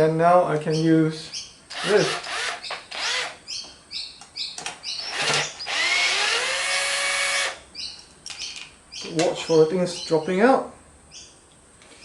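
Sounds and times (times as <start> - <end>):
small birds chirping: 0.5 - 6.1, 7.3 - 12.0
cordless drill whining: 1.7 - 3.4, 5.0 - 7.6.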